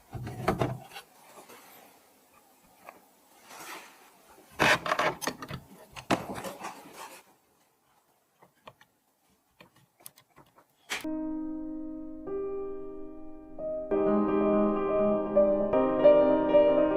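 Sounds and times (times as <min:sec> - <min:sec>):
rubbing and scraping of parts: 0:00.0 - 0:11.1.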